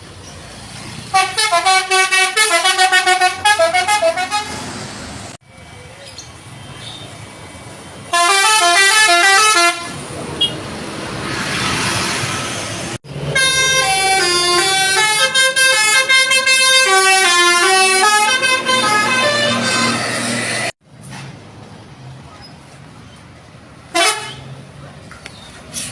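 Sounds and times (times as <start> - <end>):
traffic noise: 0.0 - 25.9
musical bus horn melodies: 1.1 - 4.7, 8.1 - 10.6, 13.2 - 20.7, 23.9 - 24.5.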